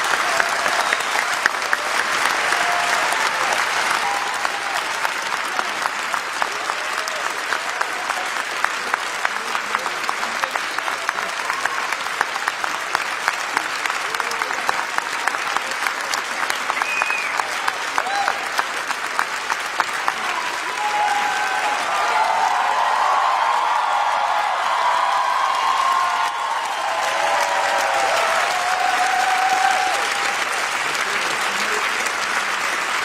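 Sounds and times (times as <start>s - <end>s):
crowd cheering and shouting: 0.0s - 8.4s, 16.8s - 18.6s, 20.1s - 31.8s
crowd applauding: 0.0s - 33.0s.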